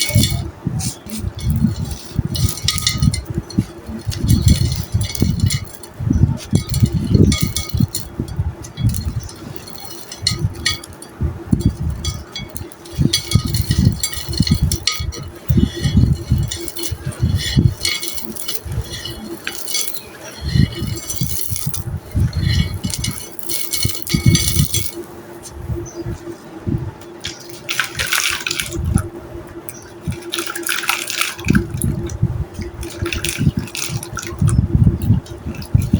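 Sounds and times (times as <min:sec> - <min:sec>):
hard bits clinking: 0:00.0 - 0:25.4, 0:27.0 - 0:35.9
sand-clay crushed and crackling: 0:00.0 - 0:35.9
low thuds: 0:10.2 - 0:17.9.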